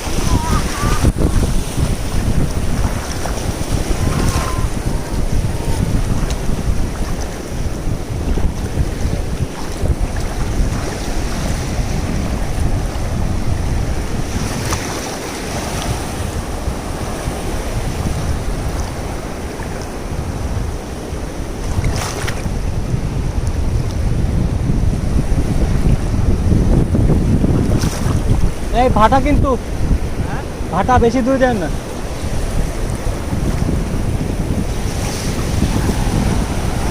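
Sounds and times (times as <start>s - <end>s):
sea waves washing in: 0.0s - 36.9s
wind buffeting microphone: 0.0s - 36.9s.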